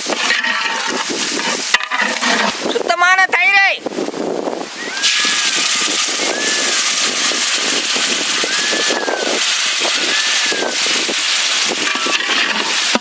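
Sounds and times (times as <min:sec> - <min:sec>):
spoon scraping pot: 0:00.0 - 0:02.6
masala sizzling in pot: 0:04.8 - 0:13.0.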